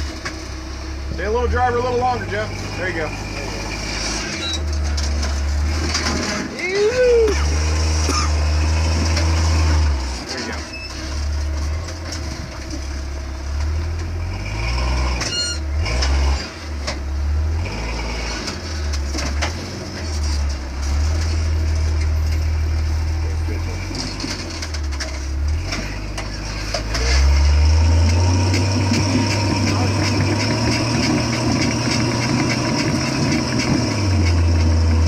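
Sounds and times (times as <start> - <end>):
rock scraping vehicle underside: 0.0 - 17.2, 18.0 - 35.0
off-road vehicle engine revving: 0.0 - 35.0.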